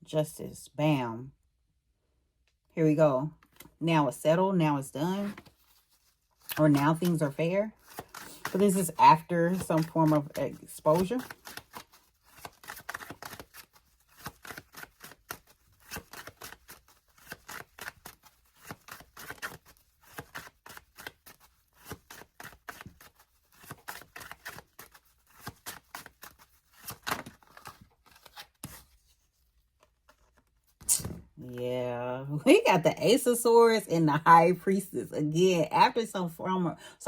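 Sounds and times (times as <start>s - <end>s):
cards being shuffled: 5.2s - 31.6s.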